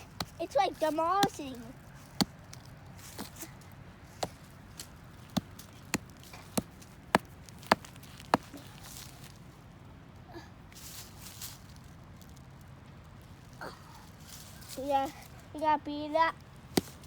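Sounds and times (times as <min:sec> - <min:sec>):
stick knocking on log: 0:01.2 - 0:01.4, 0:02.2 - 0:03.3, 0:04.2 - 0:04.5, 0:05.3 - 0:08.6, 0:16.8 - 0:17.0.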